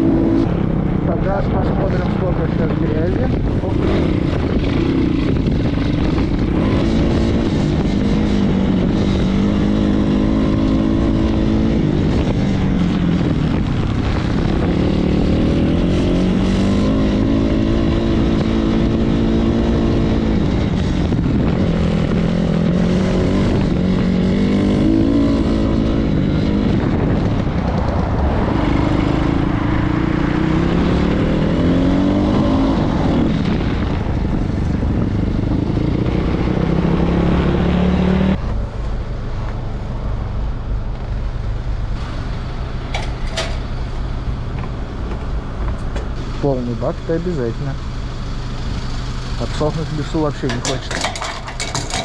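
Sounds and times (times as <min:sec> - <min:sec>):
pit bike engine revving: 0:00.0 - 0:38.7, 0:41.9 - 0:52.0.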